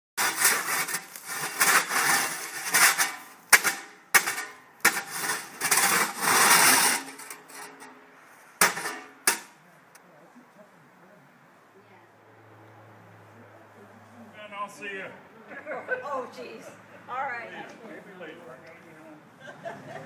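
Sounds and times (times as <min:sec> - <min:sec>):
rough scraping strokes: 0:00.2 - 0:09.6.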